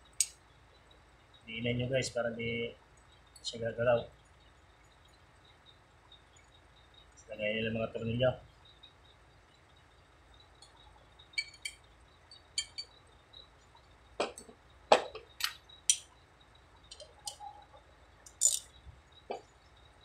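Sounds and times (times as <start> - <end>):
small metal parts clinking: 11.4 - 13.0, 15.2 - 16.1, 18.2 - 18.8.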